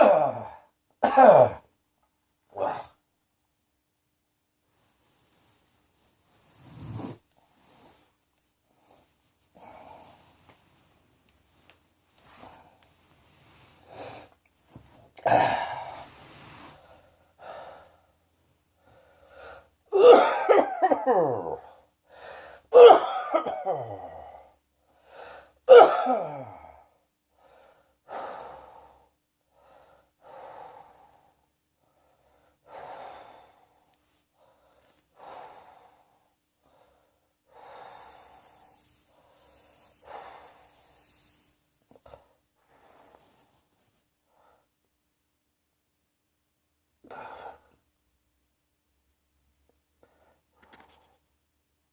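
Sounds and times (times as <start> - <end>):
person coughing: 0.0 - 1.7, 15.2 - 16.0, 19.9 - 21.7, 22.7 - 24.2, 25.7 - 26.7
wheezy breaths: 15.5 - 18.2, 18.8 - 19.8, 21.6 - 22.7, 24.4 - 25.6, 27.3 - 43.7.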